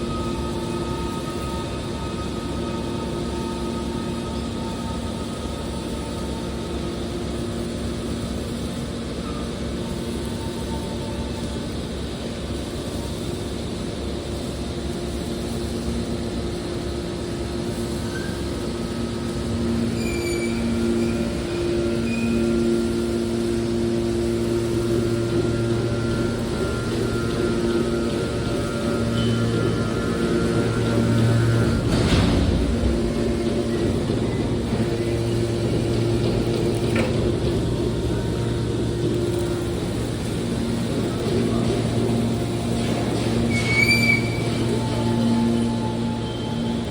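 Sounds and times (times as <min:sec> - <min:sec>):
baler machine drone: 0:00.0 - 0:46.9
machine knock: 0:27.2 - 0:39.5.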